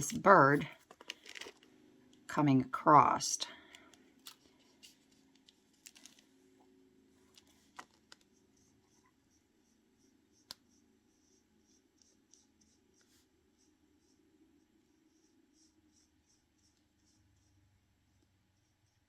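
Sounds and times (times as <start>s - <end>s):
paintbrush scratching on paper: 14.8s - 17.6s.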